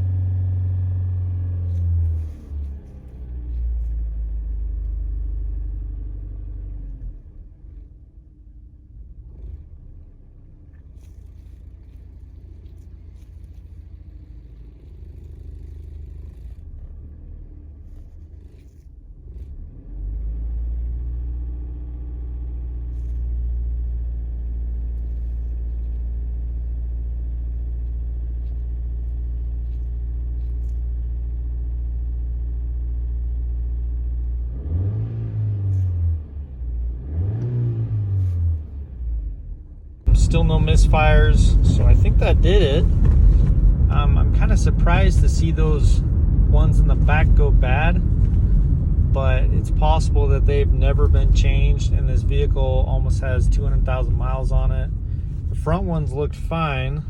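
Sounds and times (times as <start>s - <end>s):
car engine revving: 34.4s - 57.0s.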